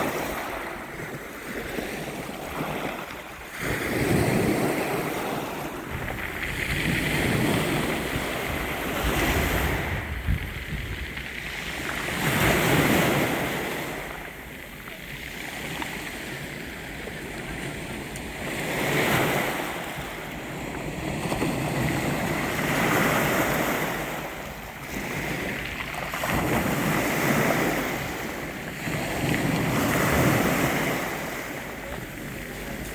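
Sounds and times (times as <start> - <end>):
sea waves breaking: 0.0 - 32.9.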